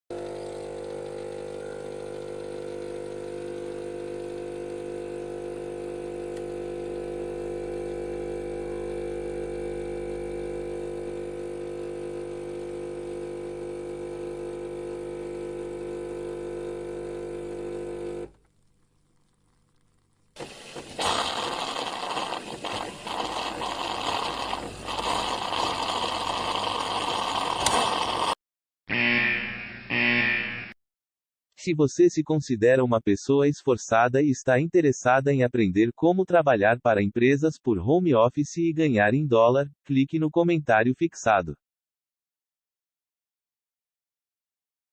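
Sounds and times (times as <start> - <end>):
coffee machine pump hum: 0.1 - 19.8, 20.4 - 28.4.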